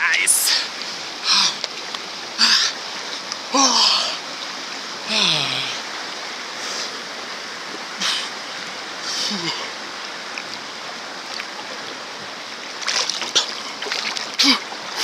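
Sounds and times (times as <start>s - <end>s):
river water rushing: 0.0s - 15.0s
splashing: 12.7s - 15.0s.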